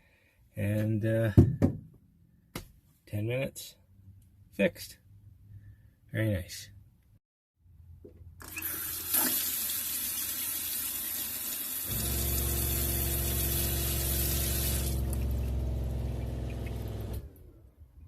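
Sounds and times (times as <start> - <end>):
water pump humming: 8.4 - 17.4
water running from a tap: 8.5 - 17.2.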